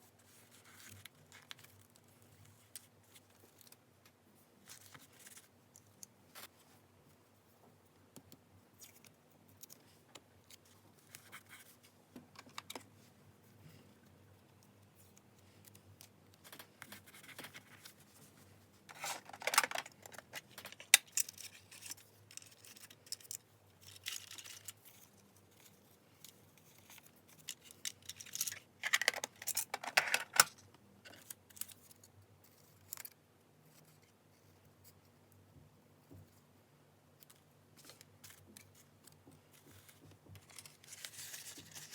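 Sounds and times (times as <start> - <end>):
paper rustling: 39.5 - 41.9.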